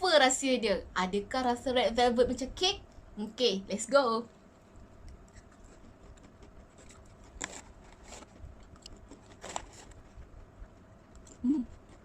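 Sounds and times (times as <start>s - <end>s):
person chewing cookie: 4.4s - 12.0s
sharp crunches: 5.4s - 10.2s.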